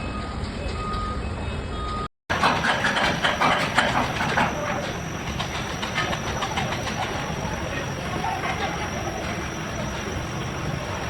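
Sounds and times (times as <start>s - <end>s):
mechanical clatter and rattling: 2.3s - 10.2s.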